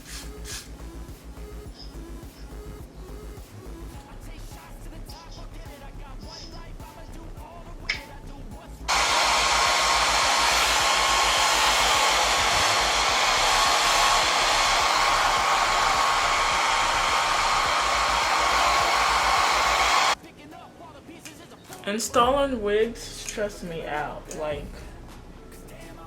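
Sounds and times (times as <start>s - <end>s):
hair dryer blowing: 8.9s - 20.2s.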